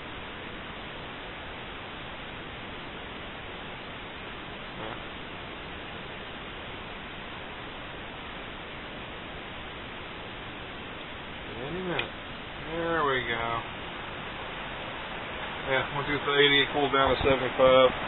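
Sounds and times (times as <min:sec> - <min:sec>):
steady hiss: 0:00.0 - 0:18.0.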